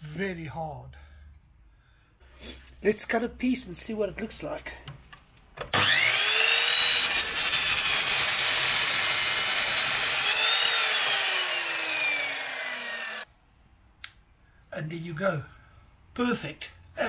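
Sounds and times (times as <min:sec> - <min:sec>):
electric saw cutting wood: 0:05.7 - 0:13.3.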